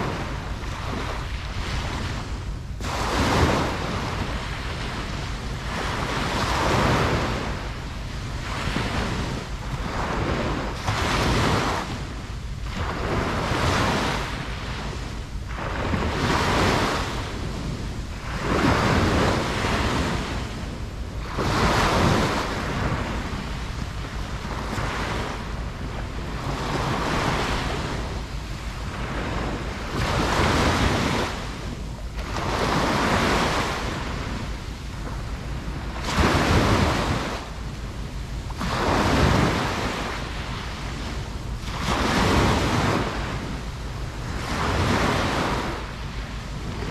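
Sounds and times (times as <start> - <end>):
ocean waves breaking on beach: 0.0 - 46.9
wind noise on microphone: 0.0 - 46.9.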